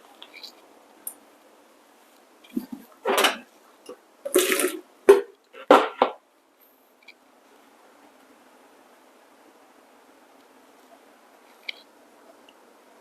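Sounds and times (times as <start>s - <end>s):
water splashing: 4.3s - 5.3s.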